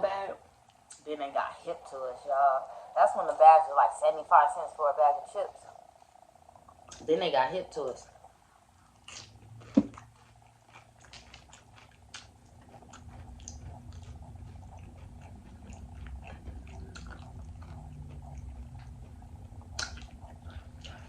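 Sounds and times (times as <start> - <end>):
chewing crunchy chips: 8.8 - 21.0
low rumble: 12.6 - 21.0.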